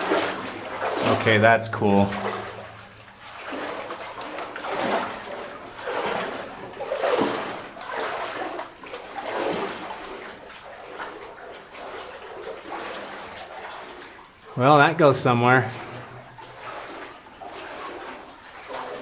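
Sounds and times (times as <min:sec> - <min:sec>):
boots wading through water: 0:00.0 - 0:19.0.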